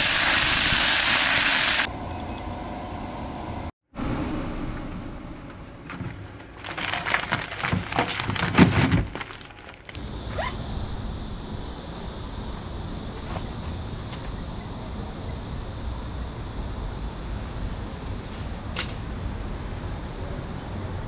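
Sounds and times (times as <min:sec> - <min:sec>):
steady hiss: 0:00.0 - 0:03.7
crackling and rustling: 0:04.8 - 0:10.2.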